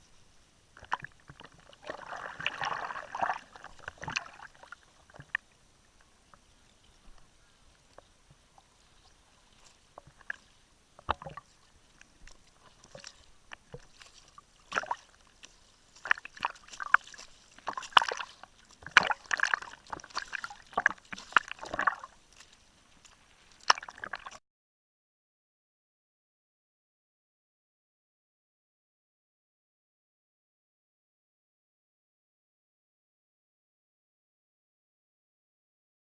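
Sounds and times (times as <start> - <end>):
water splashing against hull: 0.8 - 24.4.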